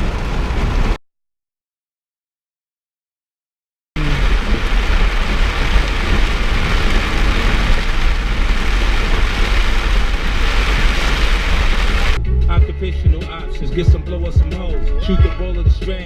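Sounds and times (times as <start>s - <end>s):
heavy rain: 0.0s - 1.0s, 4.0s - 12.2s
low road rumble: 0.0s - 1.0s, 4.0s - 16.0s.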